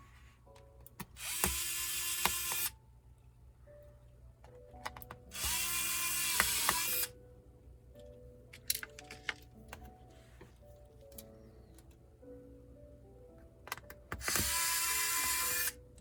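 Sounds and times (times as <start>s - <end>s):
electric screwdriver running: 1.2s - 2.7s, 5.3s - 7.1s, 14.2s - 15.8s.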